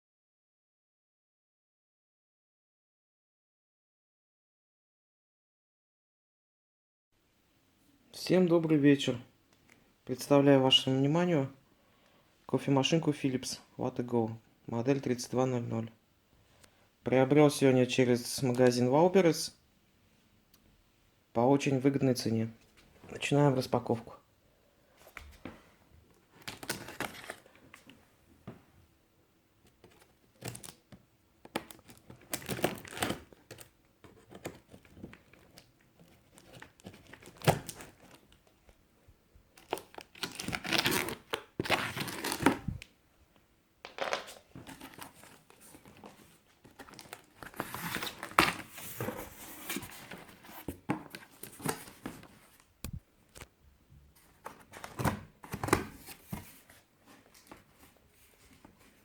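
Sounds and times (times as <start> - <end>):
packaging rustling and tearing: 31.6 - 38.5, 39.6 - 42.8, 43.9 - 52.7.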